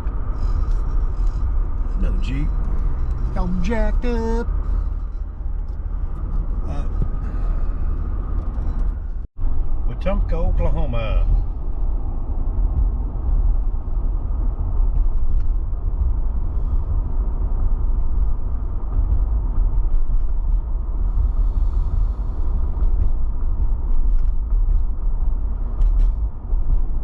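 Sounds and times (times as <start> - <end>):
creaks and rattles: 0.0 - 3.8, 4.4 - 9.7, 11.2 - 27.0
road and engine rumble: 0.0 - 27.0.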